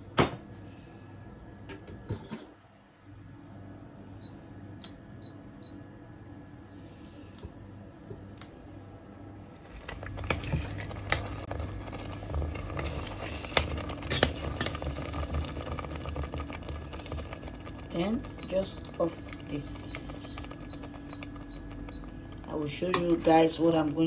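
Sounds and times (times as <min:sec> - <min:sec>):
low steady hum: 0:00.0 - 0:24.0
spoon stirring and scraping pot: 0:09.8 - 0:24.0.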